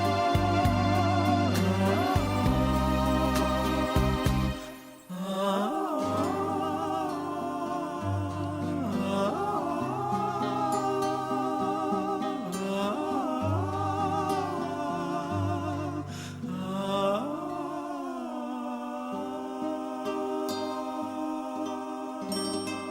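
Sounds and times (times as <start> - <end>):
stepping bass line: 0.0 - 4.6
sustained low notes: 0.0 - 4.6
wordless humming vocal melody: 0.0 - 22.9.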